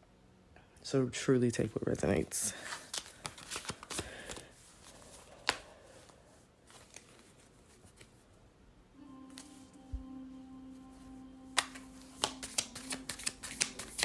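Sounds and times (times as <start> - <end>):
cards rustling and clicking: 2.6 - 8.2, 11.6 - 14.0
steady low tone: 8.9 - 14.0
card snap: 11.5 - 14.0.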